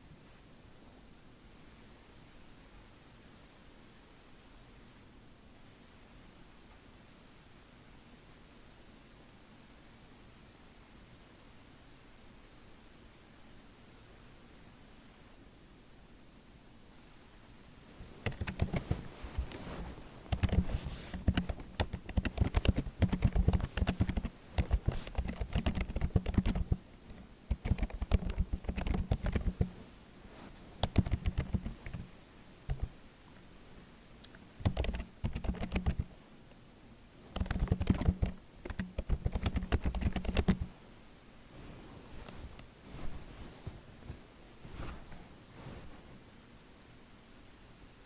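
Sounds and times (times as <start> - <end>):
typing on computer keyboard: 18.0 - 29.9, 30.6 - 32.1, 32.7 - 33.0, 34.3 - 36.1, 37.2 - 40.8.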